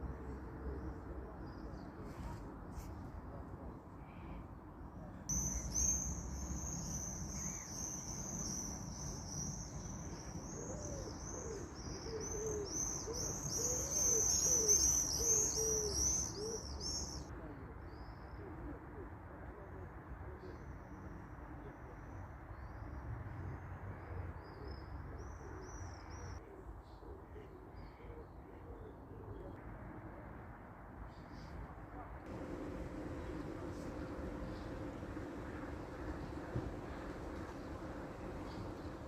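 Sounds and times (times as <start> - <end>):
low background hiss: 32.3 - 39.0.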